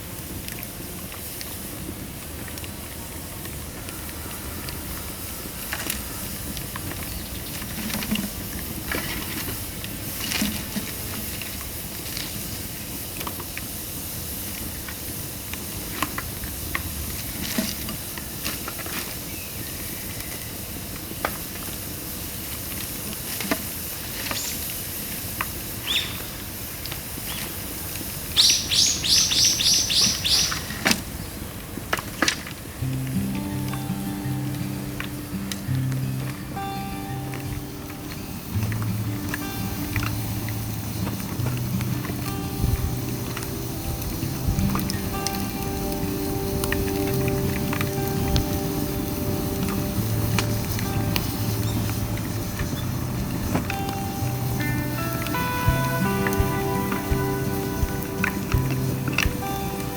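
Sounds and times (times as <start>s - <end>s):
bamboo fire crackling and popping: 0.0s - 59.9s
rain pattering: 0.0s - 59.9s
bird calling rapid high notes: 28.4s - 30.8s.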